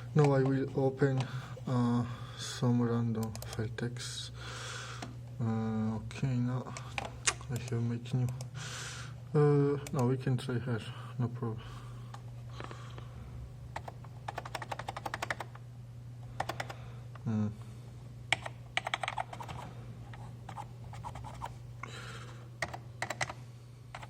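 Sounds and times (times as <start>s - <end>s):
steady low hum: 0.0s - 24.0s
keyboard keys clicking: 13.8s - 15.5s, 16.4s - 16.8s, 18.3s - 19.6s, 22.6s - 23.4s.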